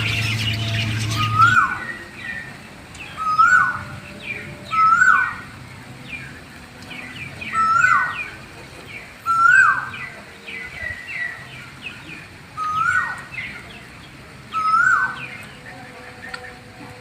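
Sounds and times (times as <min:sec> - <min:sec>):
high bird chirps: 0:00.0 - 0:05.5
loud sweeping bird calls: 0:00.0 - 0:16.7.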